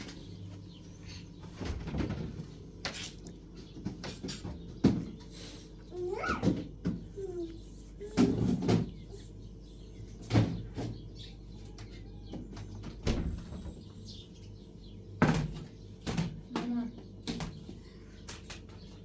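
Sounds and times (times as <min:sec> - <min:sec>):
knocks and thumps: 0:08.1 - 0:09.1.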